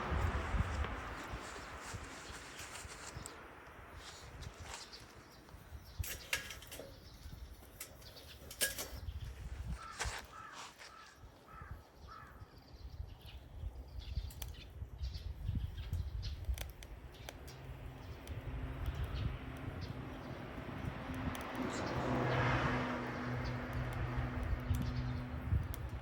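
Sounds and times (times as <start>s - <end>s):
crow cawing: 9.8s - 12.4s
wood fire crackling and popping: 16.0s - 26.0s.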